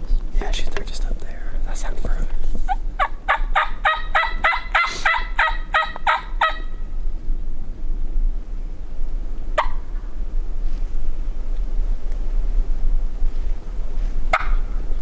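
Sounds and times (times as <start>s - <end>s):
wild turkey yelping: 2.6s - 6.8s, 9.6s - 10.0s, 14.3s - 14.7s.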